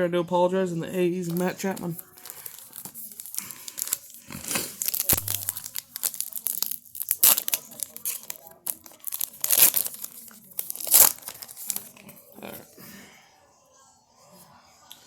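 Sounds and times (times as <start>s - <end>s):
plastic wrapper crinkling: 1.2s - 12.5s.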